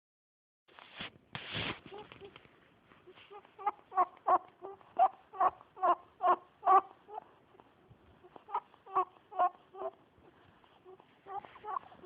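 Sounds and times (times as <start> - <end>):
rabbit squeaky honking: 11.3 - 12.0.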